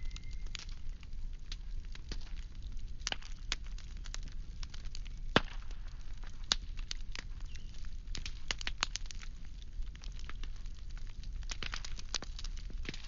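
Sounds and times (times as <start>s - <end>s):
faint low rumble: 0.0s - 13.0s
firewood crackling and popping: 0.0s - 13.0s.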